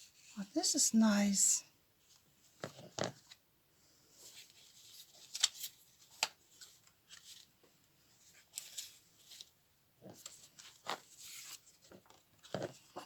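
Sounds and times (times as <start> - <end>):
paper and card rustling: 4.3 - 7.5
paper crinkles: 4.3 - 7.5.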